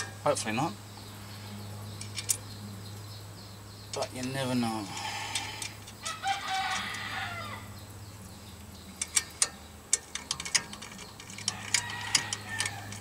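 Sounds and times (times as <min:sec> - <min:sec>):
rooster crowing: 0:05.2 - 0:07.8, 0:11.5 - 0:13.0.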